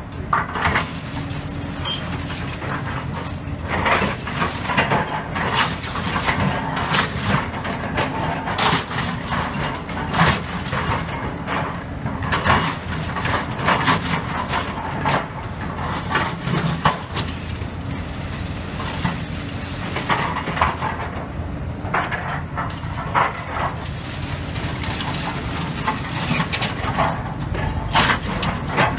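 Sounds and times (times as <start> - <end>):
excavator engine running: 0.0 - 28.9
rubble cracking and knocking: 21.8 - 28.9.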